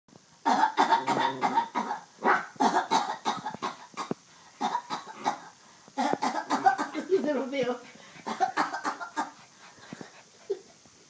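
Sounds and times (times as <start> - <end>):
person coughing harshly: 0.5 - 7.2, 8.3 - 9.3.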